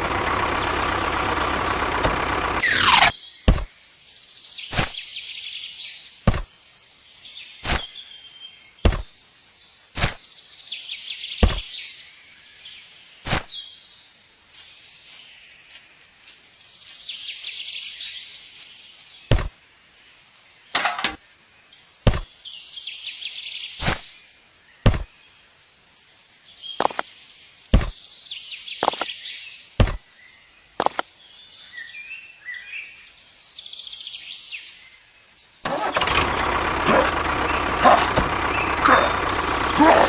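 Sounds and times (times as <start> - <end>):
birds chirping: 0.0 - 36.2, 37.0 - 40.0
sharp knocks or chops: 3.5 - 3.7, 6.3 - 6.5, 8.8 - 9.1, 11.4 - 11.6, 19.3 - 19.5, 22.0 - 22.3, 24.8 - 25.1, 29.8 - 30.0.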